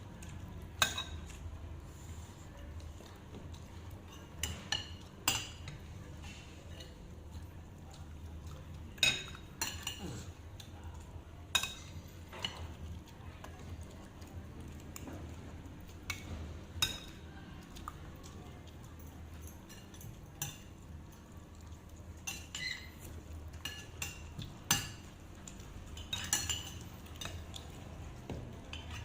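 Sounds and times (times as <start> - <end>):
metal utensils clinking on dishes: 0.3 - 1.5, 3.6 - 7.0, 8.4 - 13.0, 18.2 - 29.0.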